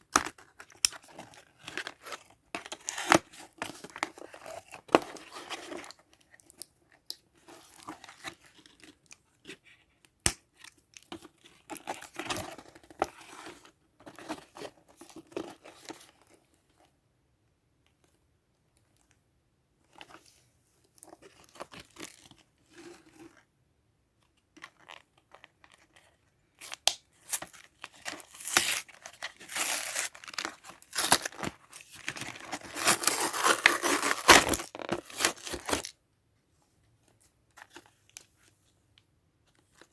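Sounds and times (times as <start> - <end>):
packaging tearing and crinkling: 28.2 - 35.9.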